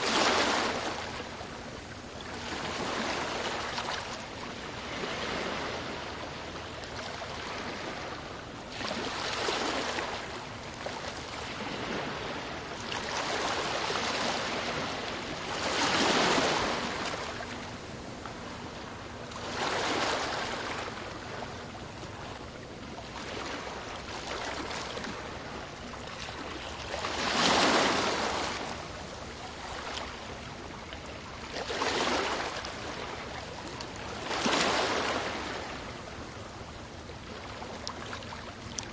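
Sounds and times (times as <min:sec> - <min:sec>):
sea waves surging: 0:00.0 - 0:04.1, 0:07.0 - 0:21.5, 0:23.1 - 0:36.3.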